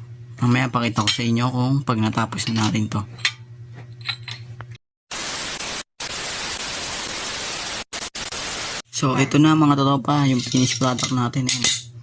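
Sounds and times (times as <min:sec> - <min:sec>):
loud static hiss: 0:05.1 - 0:09.1.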